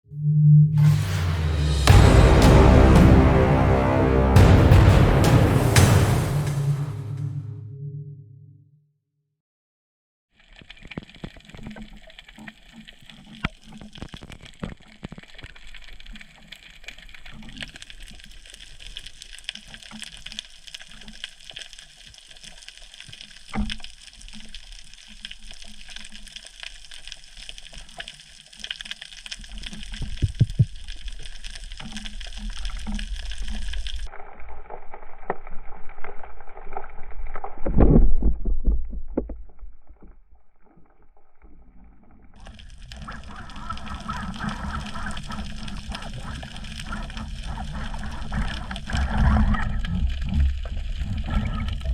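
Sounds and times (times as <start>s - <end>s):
low rumbling water: 0.1s - 8.6s, 23.4s - 51.9s
underwater water wash: 10.4s - 51.9s.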